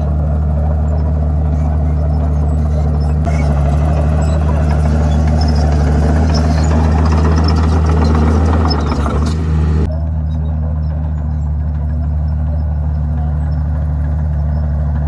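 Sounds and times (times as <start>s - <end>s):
noisy rattling: 0.0s - 9.9s
bulldozer diesel engine running: 0.0s - 15.0s.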